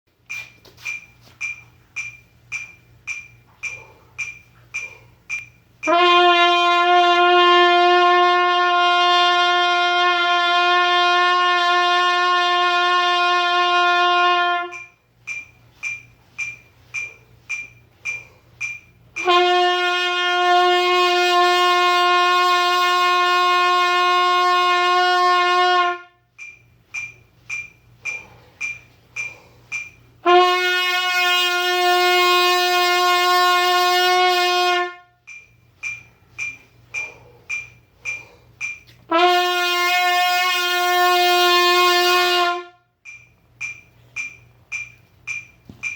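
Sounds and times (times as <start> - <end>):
air horn blasts: 5.8 - 15.0, 19.2 - 26.3, 29.2 - 35.2, 39.1 - 43.0.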